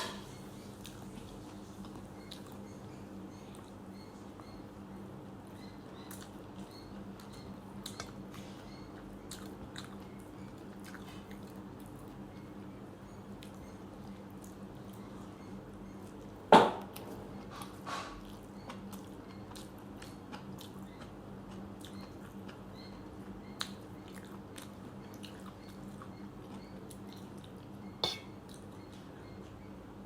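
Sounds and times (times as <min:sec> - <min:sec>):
chewing and wet mixing: 0:00.6 - 0:04.8, 0:05.5 - 0:16.4, 0:17.6 - 0:27.8
steady low hum: 0:27.7 - 0:28.7
knocks against dishes: 0:28.0 - 0:28.3.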